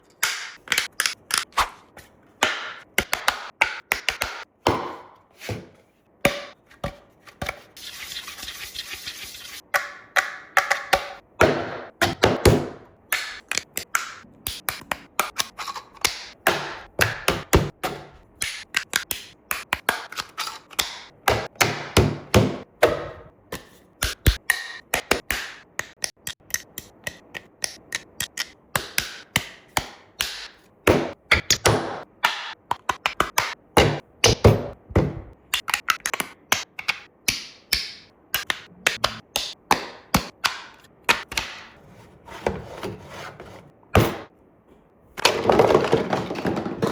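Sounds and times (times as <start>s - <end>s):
scraping noise: 41.8s - 43.7s.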